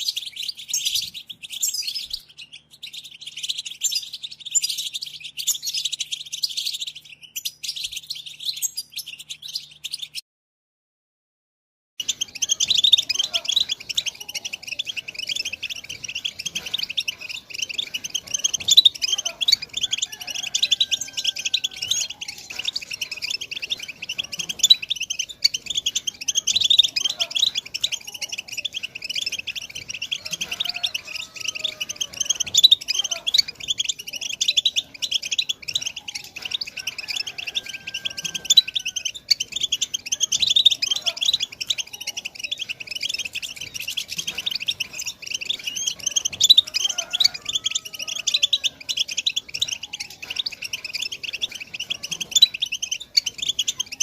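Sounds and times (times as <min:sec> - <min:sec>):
goldfinch twittering song: 0:00.0 - 0:10.2, 0:12.0 - 0:54.0.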